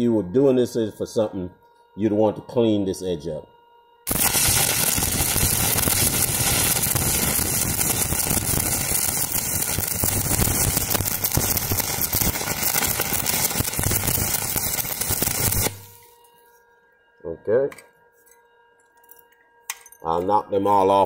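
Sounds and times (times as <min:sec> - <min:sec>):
welding arc crackling: 0:04.1 - 0:16.1.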